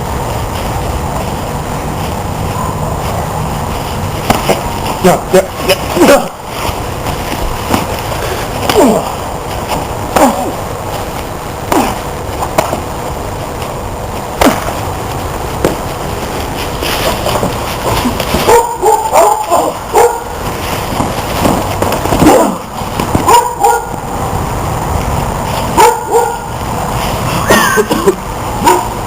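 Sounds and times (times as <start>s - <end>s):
steady rushing noise: 0.0s - 29.0s
dog barking and yelping: 18.4s - 20.4s, 22.2s - 23.9s, 25.7s - 26.5s, 28.6s - 29.0s.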